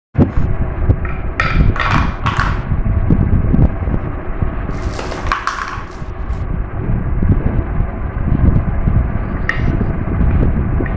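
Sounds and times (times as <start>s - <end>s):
marbles rolling down a track: 1.8s - 2.7s, 4.7s - 6.4s
marbles clinking: 4.7s - 6.4s.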